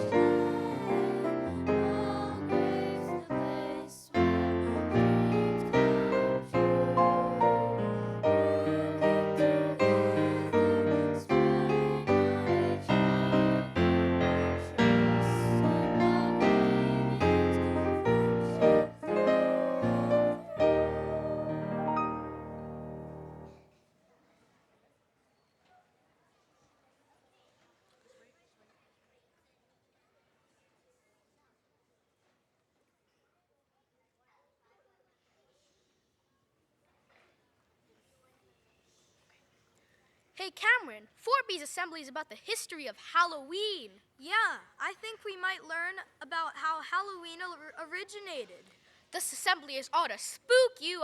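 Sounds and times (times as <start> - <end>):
piano music: 0.0 - 23.6.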